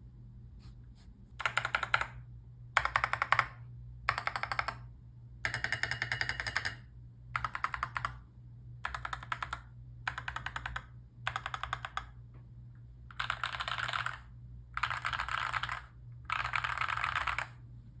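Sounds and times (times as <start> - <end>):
steady low hum: 0.0 - 18.0
mechanical keyboard typing: 1.4 - 2.2, 2.8 - 8.2, 8.8 - 12.2, 13.1 - 17.6.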